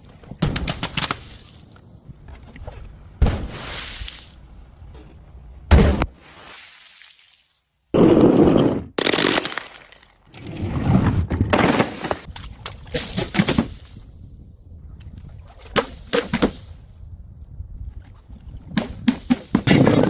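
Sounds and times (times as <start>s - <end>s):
glass crashing: 9.0s - 10.3s.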